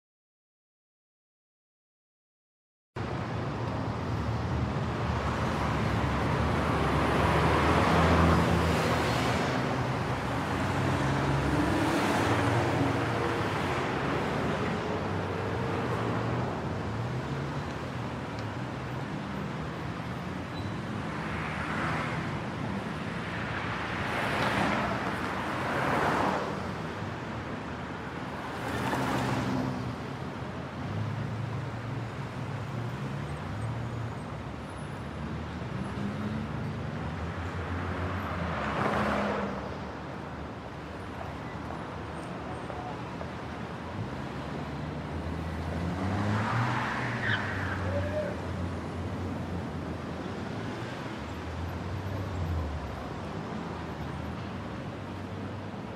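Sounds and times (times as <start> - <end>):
traffic rumble: 3.0 - 55.9
cars passing close: 3.1 - 55.9.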